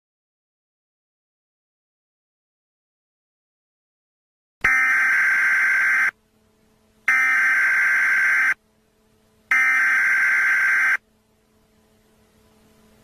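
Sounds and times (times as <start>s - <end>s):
buzzy digital data bursts: 4.7s - 6.1s, 7.1s - 8.6s, 9.5s - 11.0s.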